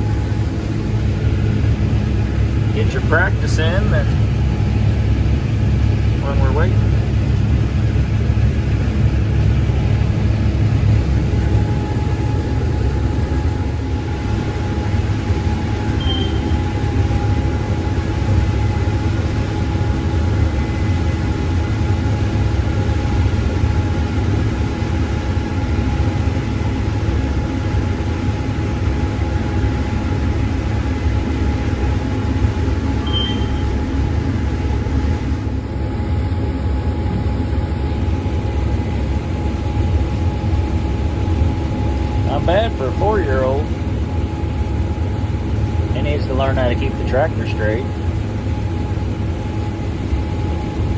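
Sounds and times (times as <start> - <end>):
tractor engine running: 0.0 - 36.1
brief high chirps: 16.0 - 16.6, 33.1 - 33.7.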